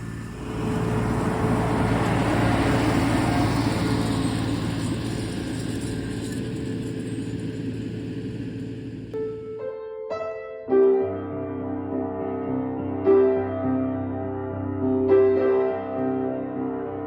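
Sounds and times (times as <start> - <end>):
vehicle running noise: 0.0 - 9.2
piano music: 9.1 - 17.0.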